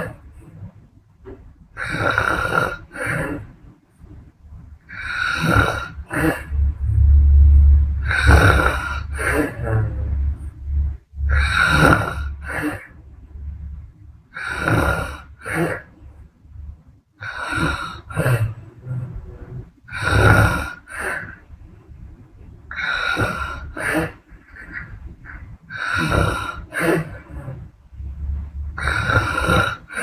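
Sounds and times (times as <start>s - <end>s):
woman snoring: 1.8s - 3.4s, 4.9s - 10.0s, 11.3s - 13.0s, 14.4s - 15.9s, 17.2s - 18.6s, 19.9s - 21.3s, 22.7s - 24.2s, 25.8s - 27.4s, 28.8s - 30.0s.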